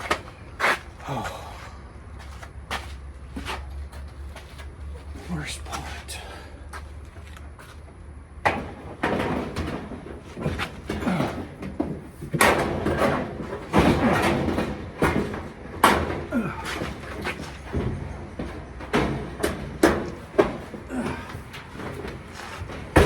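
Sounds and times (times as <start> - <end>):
sheet metal knocking and clattering: 8.4 - 23.0.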